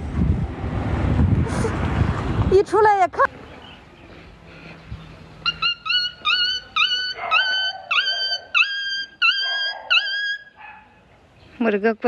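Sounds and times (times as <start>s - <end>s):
high-pitched yelping calls: 5.4s - 11.0s.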